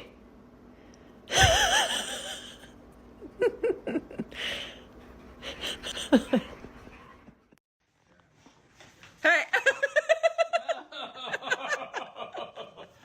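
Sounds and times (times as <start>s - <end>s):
dog wheezing: 4.3s - 6.7s.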